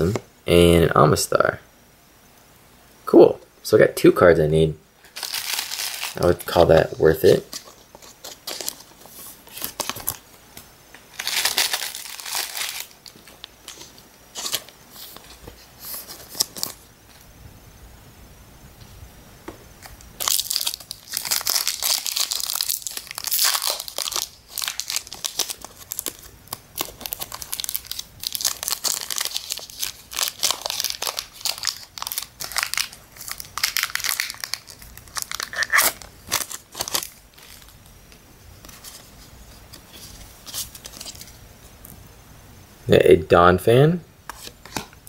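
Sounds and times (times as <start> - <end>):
foil wrapper crinkling and tearing: 5.0 - 10.2, 11.1 - 16.8, 19.8 - 38.0.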